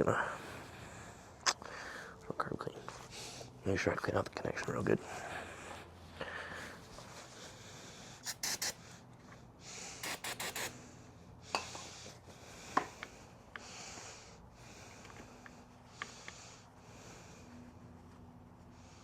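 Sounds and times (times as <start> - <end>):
aerosol can spraying: 8.2 - 8.8, 10.0 - 10.8.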